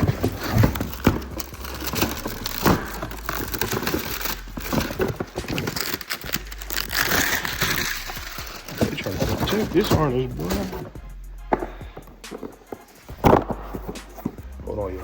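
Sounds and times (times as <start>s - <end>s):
packaging crinkling and rustling: 0.0s - 10.9s
handling knocks and clatter: 0.0s - 15.0s.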